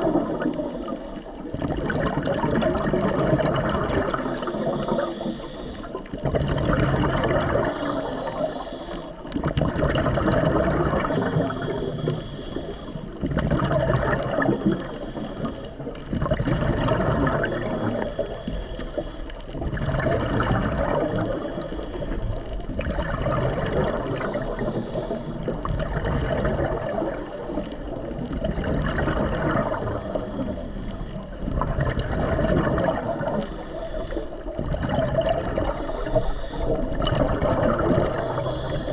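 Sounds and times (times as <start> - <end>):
diver breathing hiss: 0.0 - 1.5, 4.0 - 6.2, 7.5 - 9.4, 10.8 - 13.2, 14.1 - 16.1, 17.2 - 19.6, 20.6 - 22.7, 23.6 - 25.7, 26.6 - 28.3, 29.4 - 31.6, 32.7 - 34.7, 35.4 - 37.0, 37.8 - 38.9
exhaled bubbles gurgling underwater: 0.0 - 38.9.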